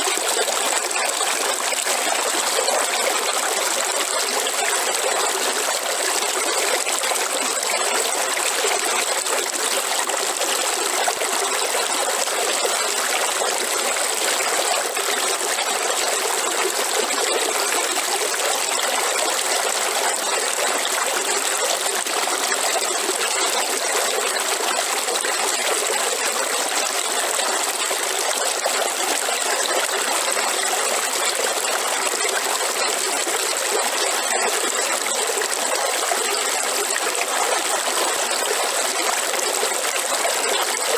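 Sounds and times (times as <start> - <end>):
river water flowing: 0.0 - 40.9.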